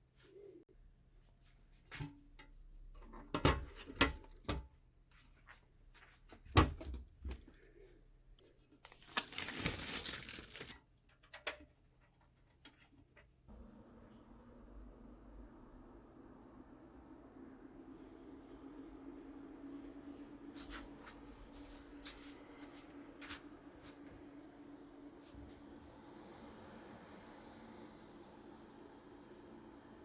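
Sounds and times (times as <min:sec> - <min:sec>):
plastic crinkling: 0:08.9 - 0:10.8
faint steady hum: 0:13.5 - 0:30.0.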